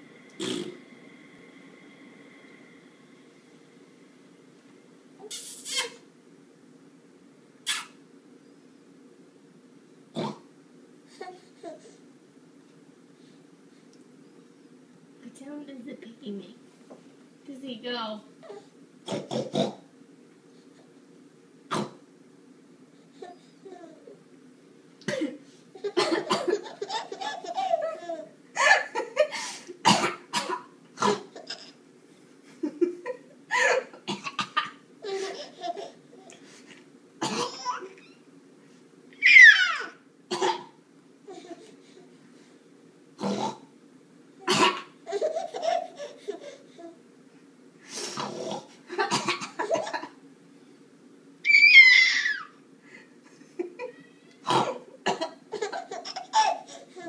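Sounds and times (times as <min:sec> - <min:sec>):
baby laughing: 0:25.8 - 0:29.3, 0:31.1 - 0:31.8, 0:33.0 - 0:36.4, 0:45.1 - 0:47.0, 0:55.3 - 0:57.0
woman coughing: 0:26.0 - 0:26.6, 0:37.2 - 0:37.7, 0:44.5 - 0:44.9, 0:49.0 - 0:49.9.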